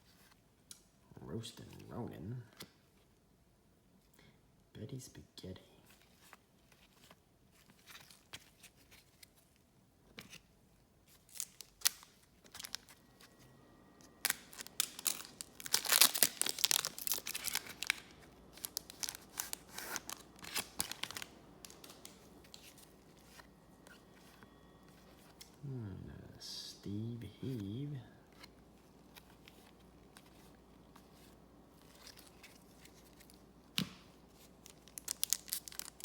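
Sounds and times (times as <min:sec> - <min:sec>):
card pack wrapper tearing: 0:11.2 - 0:13.1, 0:14.0 - 0:24.4, 0:31.8 - 0:36.0.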